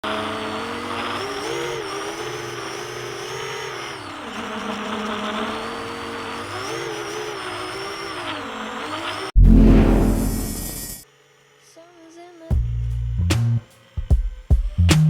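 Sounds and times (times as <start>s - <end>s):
drone motors whining: 0.1s - 11.0s.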